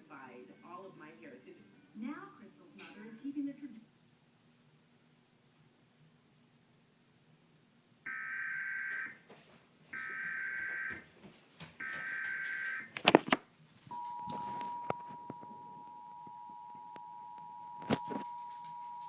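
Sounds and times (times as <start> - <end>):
two-tone attention signal: 13.9 - 19.0.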